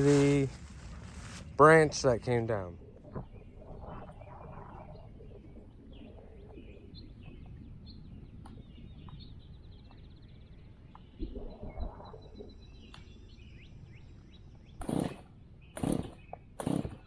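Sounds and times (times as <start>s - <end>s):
low outdoor rumble: 0.0s - 12.6s
songbirds chirping: 0.0s - 17.0s.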